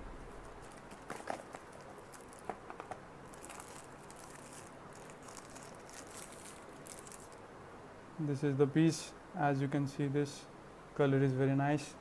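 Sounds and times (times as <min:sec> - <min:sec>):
packaging rustling and clicking: 0:00.3 - 0:07.4.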